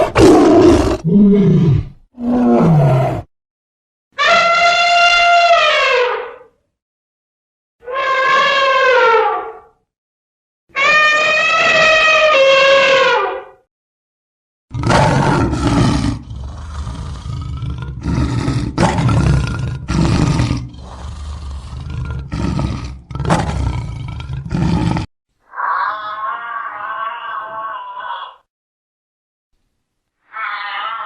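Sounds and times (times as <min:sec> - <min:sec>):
large animal roaring: 0:00.0 - 0:03.3, 0:14.7 - 0:28.4.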